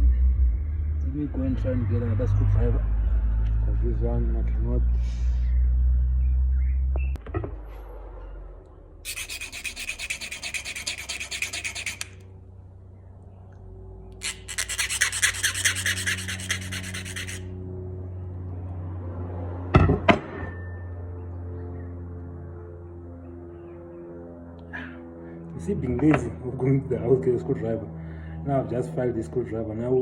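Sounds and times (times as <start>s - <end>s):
metal file rasping: 9.1s - 12.2s, 14.2s - 17.5s.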